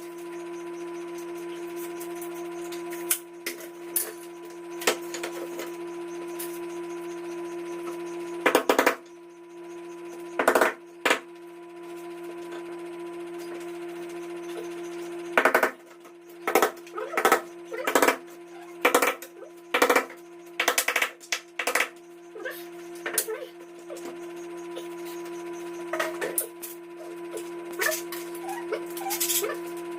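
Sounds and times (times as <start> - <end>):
steady background hum: 0.0 - 29.9
sharp rattling knocking bursts: 8.4 - 11.3, 14.5 - 26.4.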